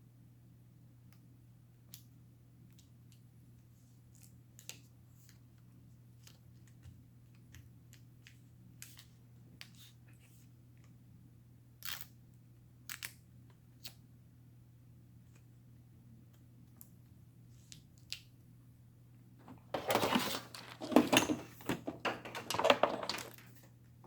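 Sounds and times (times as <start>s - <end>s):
small parts clicking and rustling: 19.4s - 23.7s.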